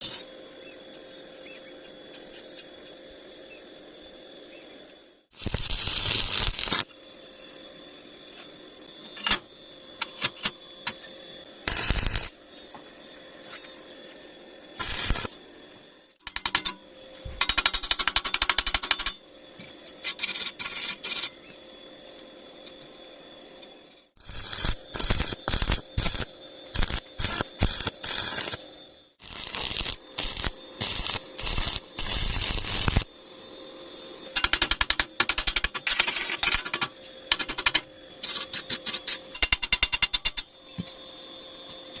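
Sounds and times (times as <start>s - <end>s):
welding arc crackling: 5.3s - 6.9s, 11.6s - 12.4s, 14.8s - 15.4s, 24.2s - 28.6s, 29.2s - 33.1s.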